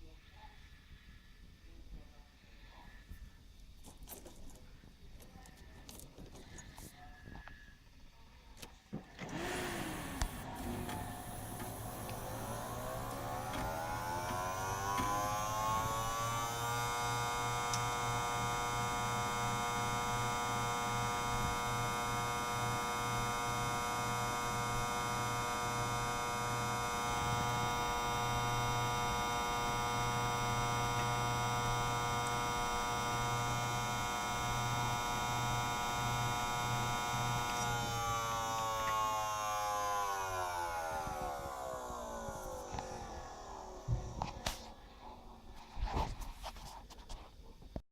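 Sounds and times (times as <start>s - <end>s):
low flickering buzz: 9.2s - 45.8s
computer whining tones: 9.4s - 44.8s.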